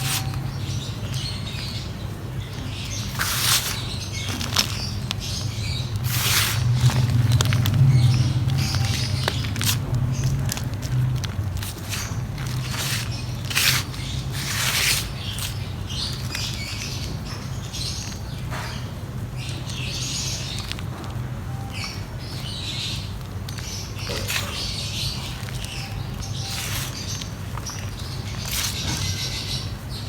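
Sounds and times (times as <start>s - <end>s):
dry mud crumbling on a sheet: 2.8s - 18.6s, 23.0s - 29.5s.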